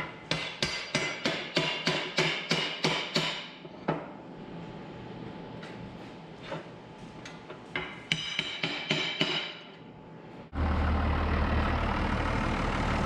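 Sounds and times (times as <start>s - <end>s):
tractor engine running: 10.5s - 13.0s.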